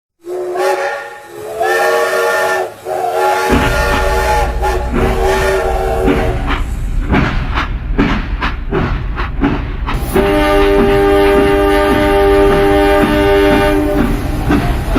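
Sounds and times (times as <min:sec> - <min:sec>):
train whistle blasts: 0:00.2 - 0:06.6, 0:10.0 - 0:14.9
train rumbling: 0:00.2 - 0:14.9.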